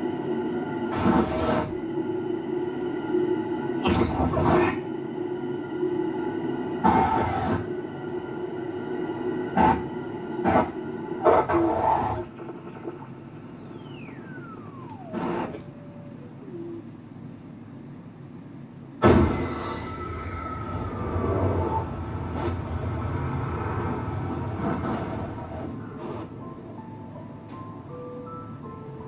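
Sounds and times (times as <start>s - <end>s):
eerie droning soundtrack: 0.0s - 29.0s
white noise static bursts: 9.6s - 15.6s
tone gliding downward: 12.2s - 17.4s.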